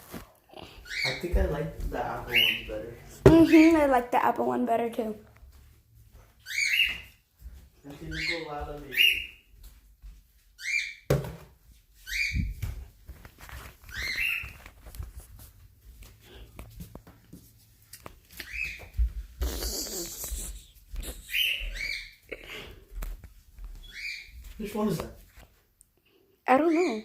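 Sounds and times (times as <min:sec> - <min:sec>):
pet bird chirping: 0:00.6 - 0:01.3, 0:02.3 - 0:03.9, 0:06.4 - 0:07.1, 0:07.9 - 0:09.5, 0:12.1 - 0:12.6, 0:13.9 - 0:14.6, 0:18.4 - 0:22.3, 0:23.8 - 0:24.4, 0:26.5 - 0:27.0.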